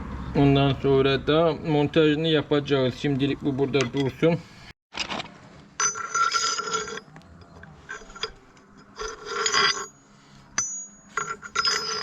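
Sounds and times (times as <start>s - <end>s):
steel parts scraping and ringing: 5.8s - 12.0s
sharp metallic clink: 7.9s - 12.0s.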